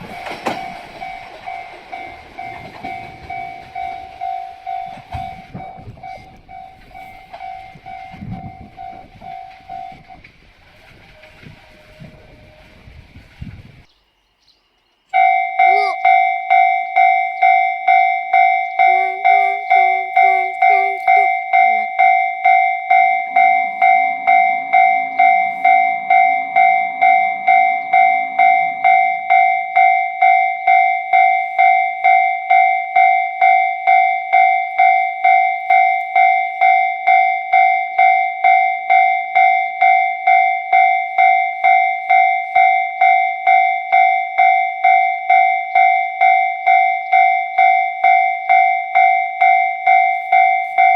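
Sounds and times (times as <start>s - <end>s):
low rumble: 0.0s - 13.9s
railway crossing bell ringing: 0.0s - 13.9s, 15.1s - 50.9s.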